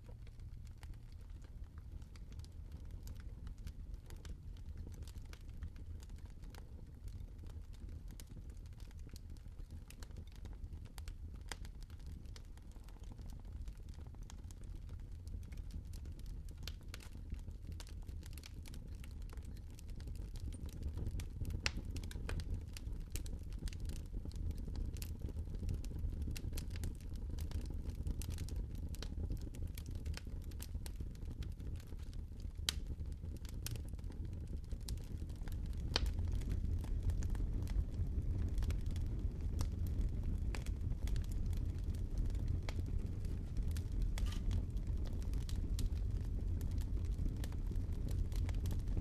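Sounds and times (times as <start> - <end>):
steady low rumble: 34.5 - 47.5.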